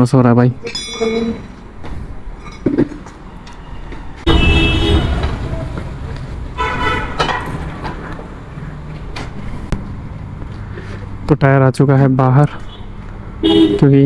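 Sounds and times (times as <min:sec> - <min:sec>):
street traffic: 0:00.0 - 0:14.0
vehicle horn honking: 0:04.3 - 0:07.8, 0:12.7 - 0:14.0
tyre-changing machine rumbling: 0:04.3 - 0:11.2.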